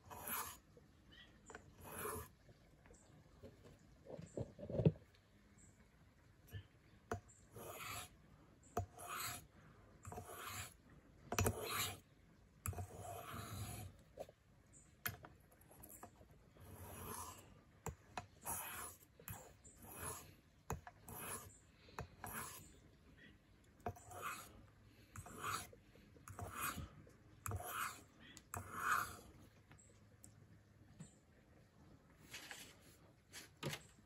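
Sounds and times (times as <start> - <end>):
knife scraping on sharpener: 0.0 - 0.6, 1.8 - 2.3, 7.6 - 8.1, 8.8 - 9.4, 10.0 - 12.0, 12.7 - 14.0, 15.8 - 17.4, 18.4 - 22.8, 23.8 - 24.6, 25.2 - 29.3.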